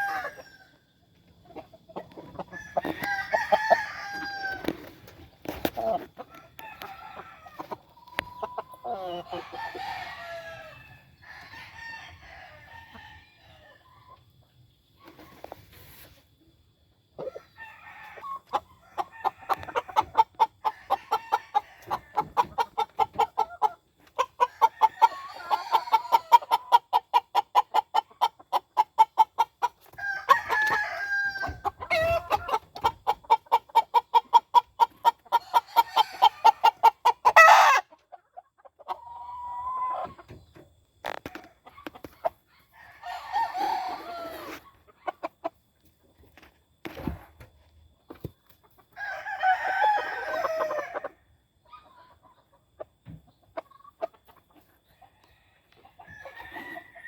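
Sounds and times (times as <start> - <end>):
roosters crowing: 0.0 - 0.9, 2.4 - 13.8, 24.4 - 26.7, 29.9 - 32.6, 35.3 - 37.9, 42.6 - 44.6, 48.9 - 51.2, 55.2 - 57.0
chickens clucking: 0.0 - 57.0.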